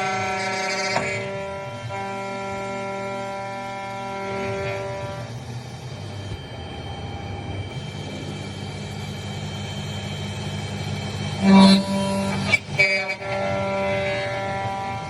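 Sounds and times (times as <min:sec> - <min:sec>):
vehicle horn: 0:00.0 - 0:05.4, 0:11.4 - 0:15.0
steady engine hum: 0:00.0 - 0:15.0.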